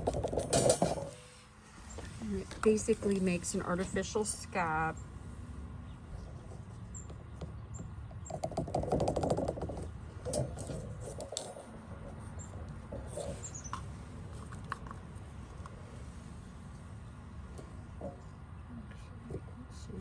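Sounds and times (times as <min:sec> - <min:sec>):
rustling and crackling: 0:08.3 - 0:16.9.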